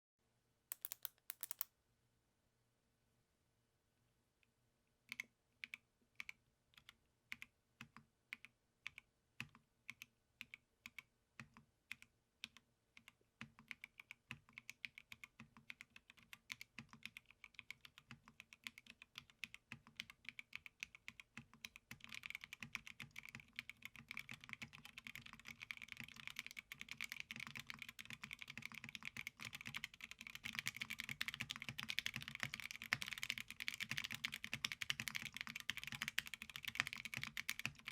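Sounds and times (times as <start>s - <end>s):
mechanical keyboard typing: 0.7s - 1.7s, 10.9s - 37.9s.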